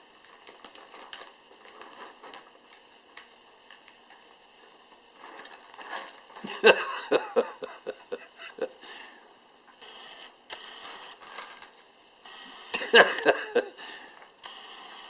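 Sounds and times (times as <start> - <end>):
wrapping paper crinkling: 0.0 - 6.3, 10.7 - 11.9.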